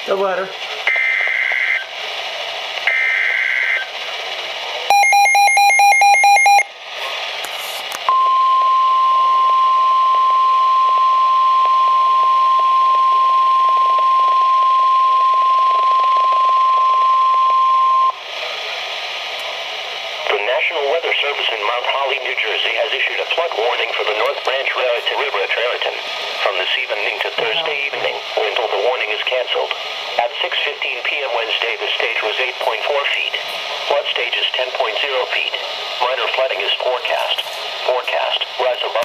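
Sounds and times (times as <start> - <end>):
radio hiss: 0.0 - 8.1, 10.8 - 39.0
steady alarm tone: 0.9 - 1.8, 4.9 - 6.7, 8.1 - 18.2
rapid beeps: 4.9 - 6.7.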